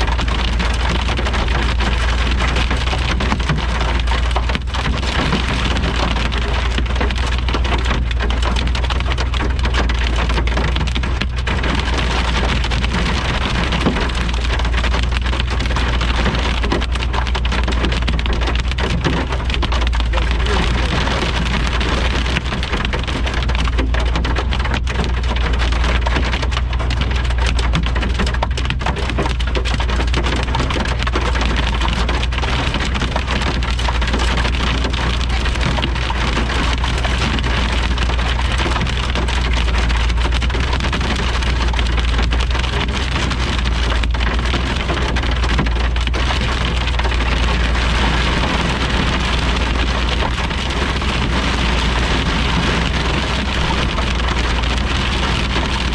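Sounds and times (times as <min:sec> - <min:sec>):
heavy rain falling: 0:00.0 - 0:55.9
low rumble: 0:00.0 - 0:55.9.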